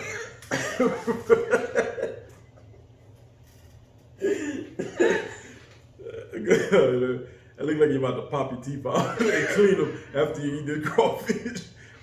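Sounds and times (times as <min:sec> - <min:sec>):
person laughing: 0:00.0 - 0:02.6.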